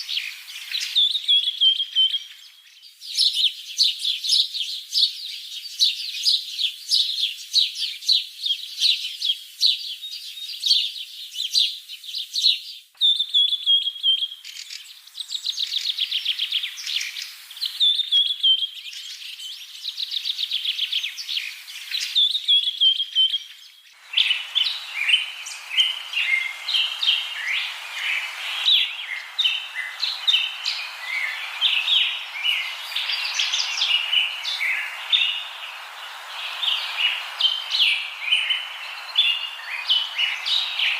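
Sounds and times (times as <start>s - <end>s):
birds calling and chattering: 0.0s - 2.9s, 13.0s - 40.9s
steady background hiss: 0.0s - 40.9s.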